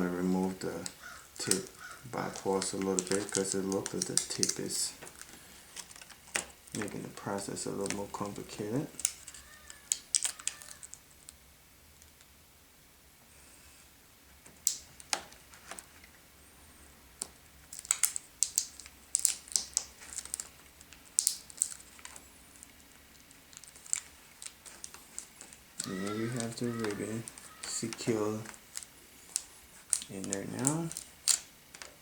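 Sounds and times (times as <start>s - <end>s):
fingers clicking ribbon cable connector: 0.8s - 7.0s, 7.7s - 11.0s, 17.2s - 32.0s.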